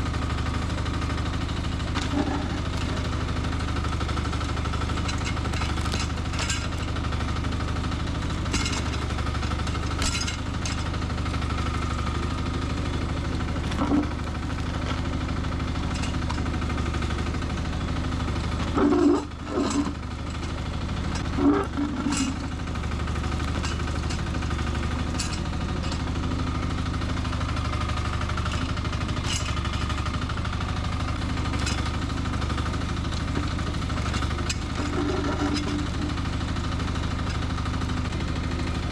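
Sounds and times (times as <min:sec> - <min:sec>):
mini excavator running: 0:00.0 - 0:38.9
sharp knocks and clanks: 0:08.5 - 0:09.0, 0:18.7 - 0:20.6.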